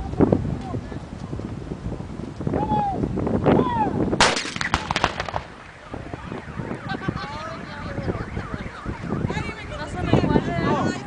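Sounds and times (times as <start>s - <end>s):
cannon shot boom: 4.2s - 7.1s
crackling and rumbling: 4.2s - 9.3s.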